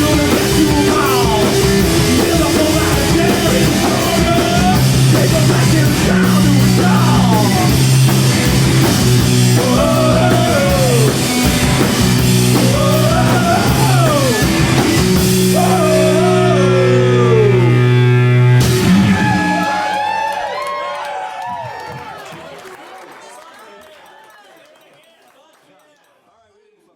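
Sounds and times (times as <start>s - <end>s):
person singing: 0.0s - 7.8s, 9.5s - 11.4s, 12.4s - 14.6s, 15.4s - 18.2s
drums and cymbals: 0.0s - 16.4s, 18.6s - 20.1s
live rock band playing: 0.0s - 20.2s.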